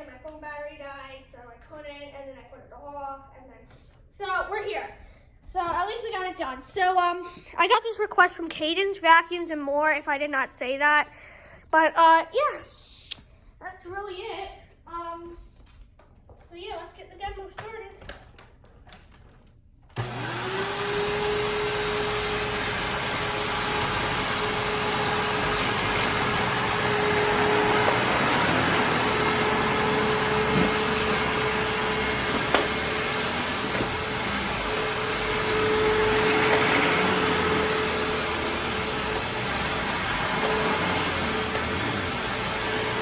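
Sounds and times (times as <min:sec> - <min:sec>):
vacuum cleaner motor whining: 0:20.0 - 0:43.0.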